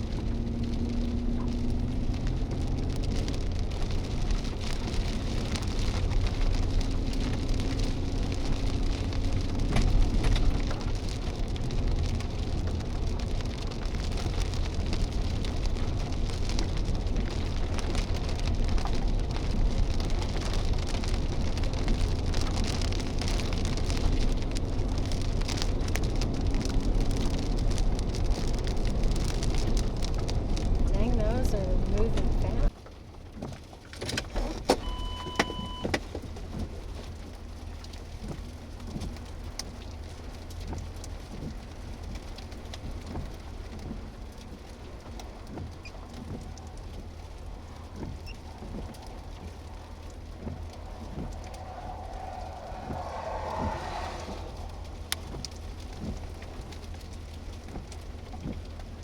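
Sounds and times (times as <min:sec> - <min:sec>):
hail pelting down: 0:00.0 - 0:59.0
strong wind gusting: 0:30.4 - 0:32.7, 0:49.2 - 0:56.6.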